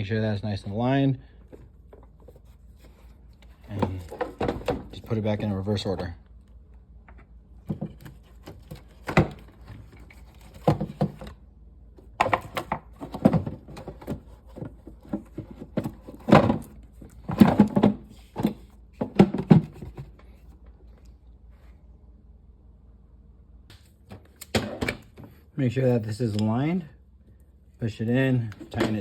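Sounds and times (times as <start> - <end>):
plastic cover knocking and clattering: 3.7 - 5.0, 7.6 - 11.4, 12.0 - 20.2.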